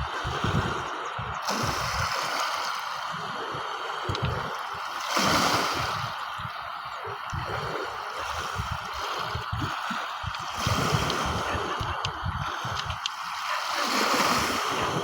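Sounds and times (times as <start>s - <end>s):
sea waves washing: 0.0s - 15.0s.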